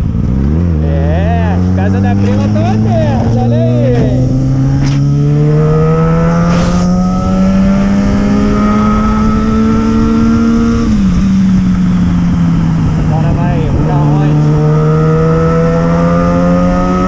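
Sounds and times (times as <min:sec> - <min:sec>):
motorcycle engine running under load: 0:07.2 - 0:17.0.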